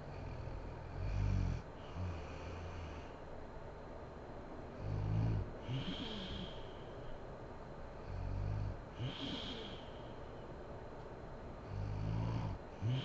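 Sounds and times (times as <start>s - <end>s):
woman snoring: 4.8s - 6.6s, 8.0s - 9.9s, 11.7s - 13.0s
breathy whistly out-breath: 5.7s - 7.2s, 9.0s - 10.4s.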